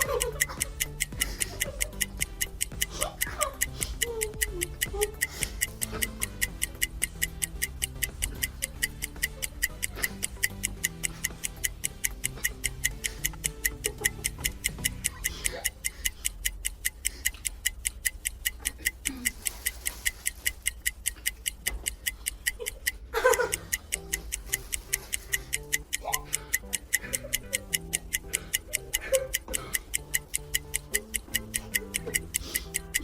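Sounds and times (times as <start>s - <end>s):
low electronic tune: 0.0s - 16.0s, 23.2s - 33.0s
clock-like ticks: 0.0s - 33.0s.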